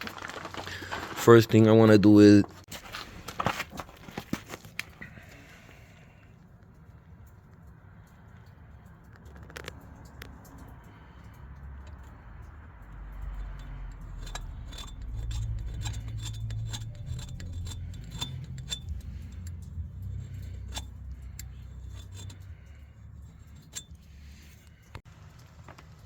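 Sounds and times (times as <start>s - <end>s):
metal parts clicking and clinking: 8.9s - 26.0s
steady low hum: 11.9s - 25.4s.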